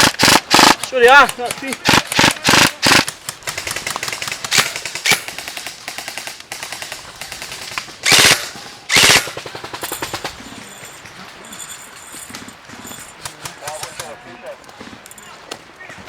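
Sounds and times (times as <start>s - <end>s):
airsoft guns firing full auto: 0.0s - 10.6s.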